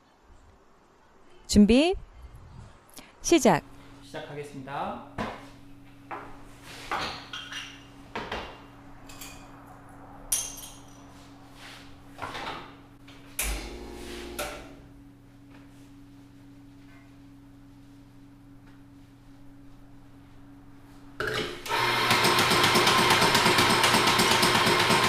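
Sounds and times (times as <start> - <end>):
low machine hum: 3.0 - 21.9
low hum: 12.9 - 21.2.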